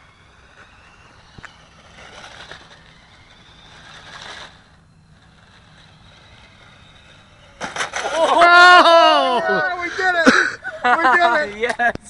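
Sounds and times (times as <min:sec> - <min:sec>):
model plane motor buzz: 0:00.0 - 0:08.4.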